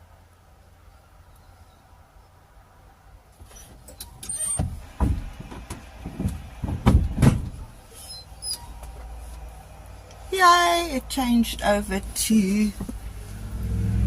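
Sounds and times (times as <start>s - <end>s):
knocks and clunks in van cab: 3.8s - 7.8s.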